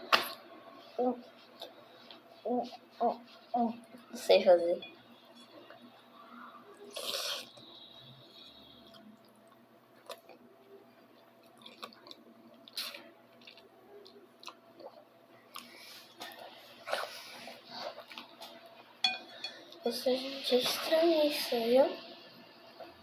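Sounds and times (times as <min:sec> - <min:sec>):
chewing noodles: 0:06.9 - 0:07.7, 0:11.2 - 0:18.5.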